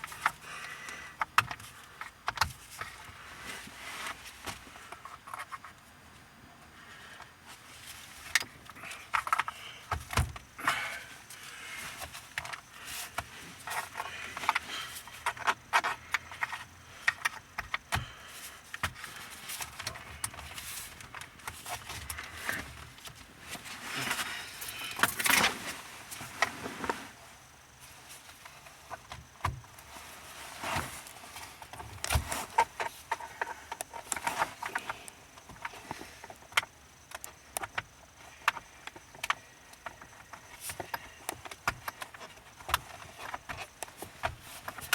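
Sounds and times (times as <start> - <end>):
plastic parts being pried: 0.0 - 3.1, 8.3 - 10.8, 12.0 - 23.2, 31.6 - 44.9.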